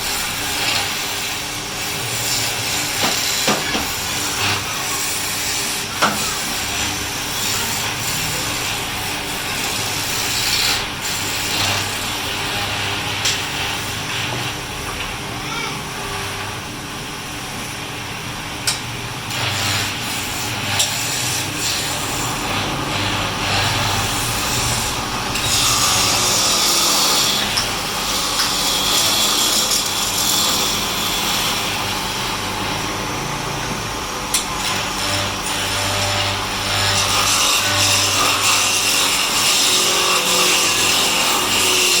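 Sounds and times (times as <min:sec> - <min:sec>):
lathe tool scraping wood: 0:00.0 - 0:14.7, 0:19.3 - 0:42.0
lathe motor hum: 0:16.0 - 0:42.0.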